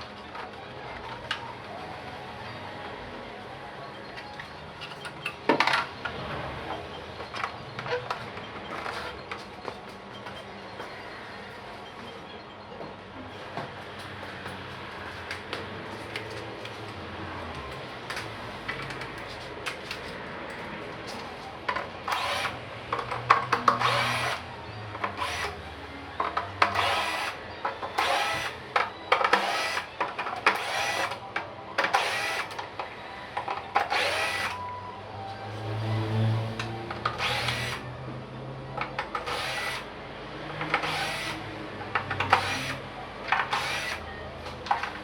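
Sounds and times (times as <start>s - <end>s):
power drill running in bursts: 22.1s - 22.6s, 23.8s - 24.4s, 25.2s - 25.6s, 26.8s - 27.4s, 28.0s - 28.6s, 29.4s - 29.9s, 30.6s - 31.1s, 32.0s - 32.5s, 33.9s - 34.6s, 37.2s - 37.8s, 39.3s - 39.8s, 40.8s - 41.4s, 42.3s - 42.8s, 43.5s - 44.0s.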